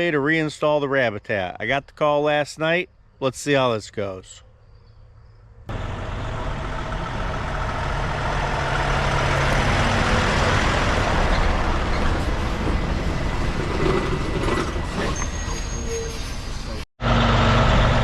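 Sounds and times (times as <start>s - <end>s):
truck engine droning: 5.7s - 18.0s.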